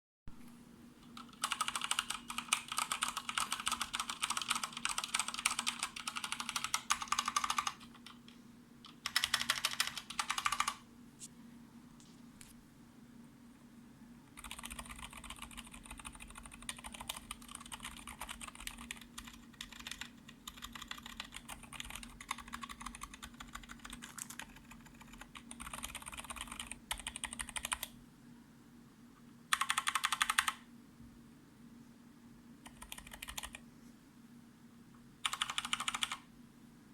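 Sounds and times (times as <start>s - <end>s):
mechanical keyboard typing: 1.0s - 8.2s, 8.8s - 10.8s, 14.4s - 27.9s, 29.5s - 30.6s, 32.6s - 33.6s, 35.2s - 36.2s.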